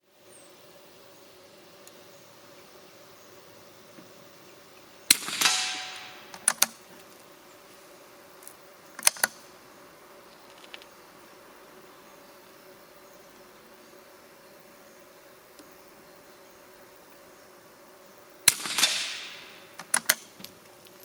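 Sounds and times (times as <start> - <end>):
rifle shot with echo: 5.1 - 6.6, 18.5 - 20.0
rifle bolt clicks: 18.5 - 20.3.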